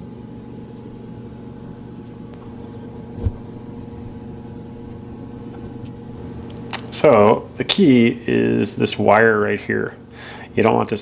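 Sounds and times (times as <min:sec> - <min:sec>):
low machine hum: 0:00.0 - 0:11.0.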